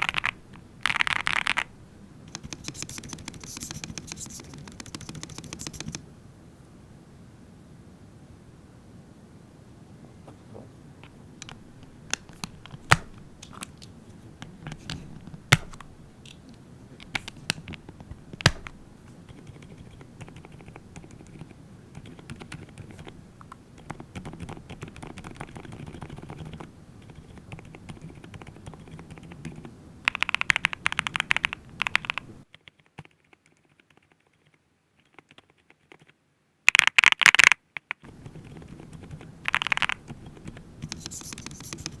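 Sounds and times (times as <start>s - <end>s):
mechanical keyboard typing: 0.0s - 6.0s, 11.4s - 13.8s, 14.6s - 16.4s, 17.0s - 36.1s, 36.7s - 42.0s.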